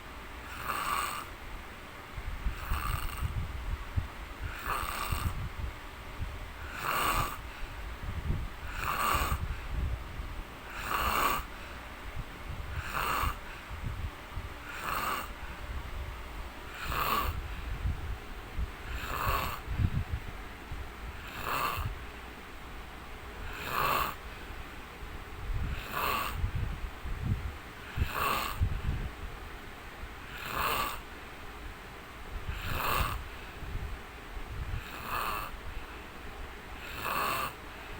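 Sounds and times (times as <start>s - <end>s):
man snoring: 0.4s - 1.3s, 2.5s - 3.3s, 4.4s - 5.4s, 6.6s - 7.4s, 8.6s - 9.5s, 10.7s - 11.5s, 12.7s - 13.5s, 14.6s - 15.4s, 16.7s - 17.4s, 18.8s - 19.6s, 21.2s - 21.9s, 23.4s - 24.2s, 25.6s - 26.5s, 27.9s - 28.7s, 30.3s - 31.0s, 32.5s - 33.3s, 34.7s - 35.6s, 36.8s - 37.6s.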